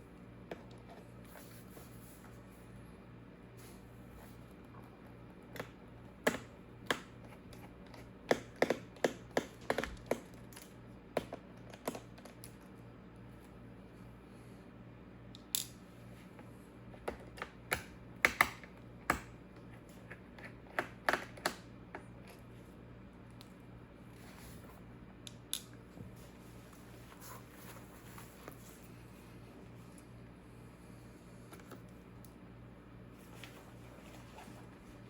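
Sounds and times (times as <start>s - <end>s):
low steady hum: 0.0s - 35.0s.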